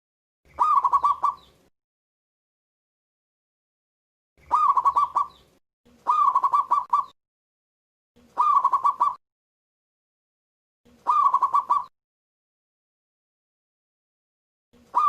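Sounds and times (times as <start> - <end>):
dove cooing: 0.5 - 1.5, 4.4 - 5.4, 6.0 - 7.1, 8.3 - 9.2, 11.0 - 11.9.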